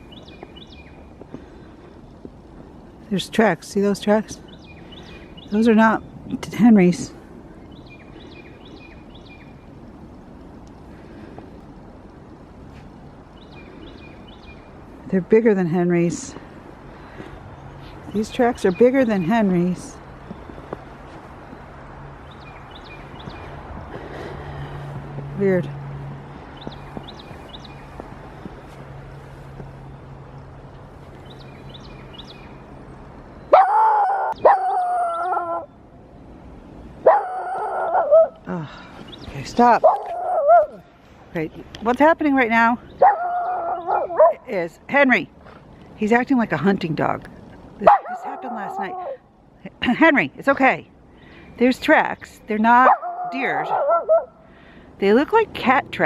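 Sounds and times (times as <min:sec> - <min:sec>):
dog howling: 0:33.5 - 0:35.7, 0:37.1 - 0:38.4, 0:39.8 - 0:40.8, 0:43.0 - 0:44.4, 0:47.9 - 0:49.2, 0:52.8 - 0:54.3.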